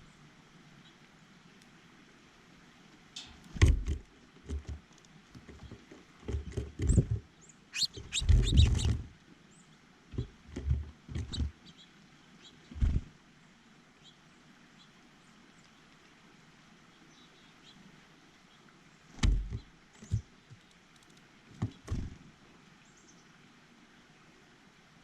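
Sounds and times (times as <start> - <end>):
birds knocking on feeder: 3.2 - 9.1, 10.1 - 11.6, 19.2 - 20.3, 21.5 - 22.2
high bird chip notes: 7.7 - 8.9.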